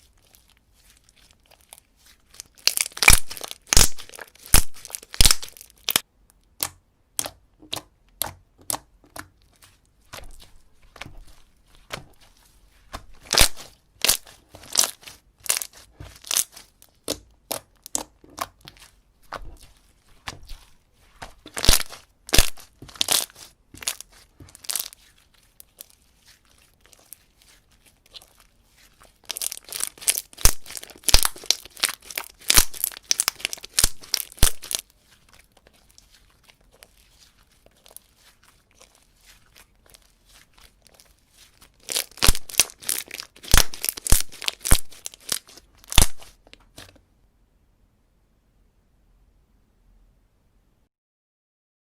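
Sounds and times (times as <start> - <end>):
slime popping and clicking: 2.8 - 6.0, 29.3 - 34.8.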